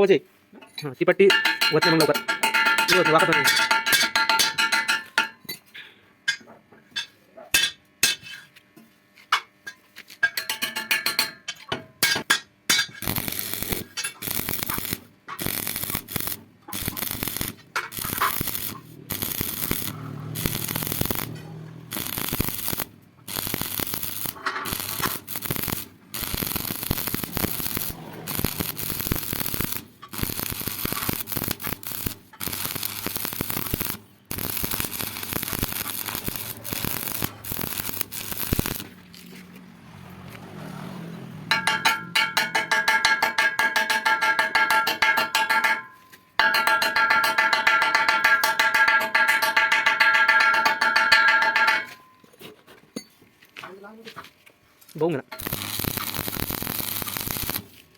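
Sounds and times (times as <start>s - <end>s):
electric arc welding hiss: 13.0s - 38.9s, 55.4s - 57.9s
metal clinks and taps: 41.5s - 53.2s.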